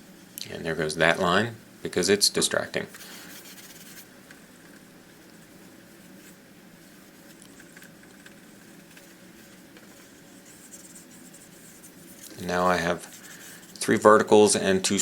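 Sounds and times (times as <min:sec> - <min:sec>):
low steady hiss: 0:00.0 - 0:15.0
pencil scratching on paper: 0:03.2 - 0:04.1, 0:07.6 - 0:13.8.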